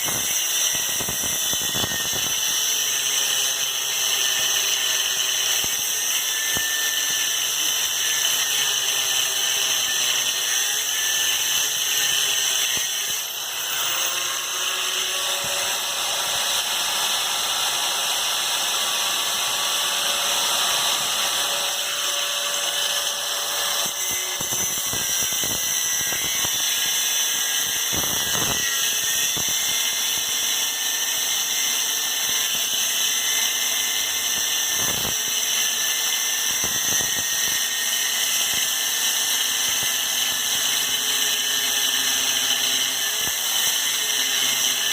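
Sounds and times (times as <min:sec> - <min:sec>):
power tool whining on metal: 0:00.0 - 0:44.9.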